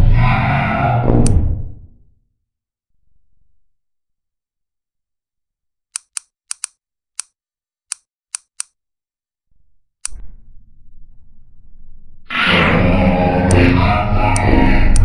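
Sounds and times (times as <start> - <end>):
low rumbling noise: 0.0 - 2.1, 9.5 - 15.0
sharp short clicks: 5.9 - 8.8.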